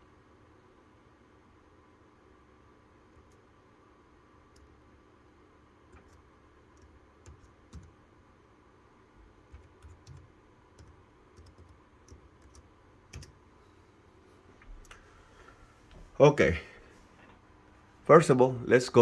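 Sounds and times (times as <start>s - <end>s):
computer keys clicking: 4.5s - 4.8s, 5.9s - 8.0s, 9.5s - 13.4s.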